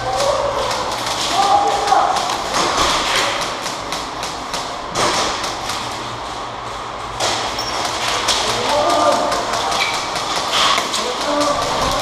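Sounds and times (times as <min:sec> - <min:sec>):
steady rustling noise: 0:00.0 - 0:12.0
rapid clicks and thuds: 0:07.2 - 0:12.0.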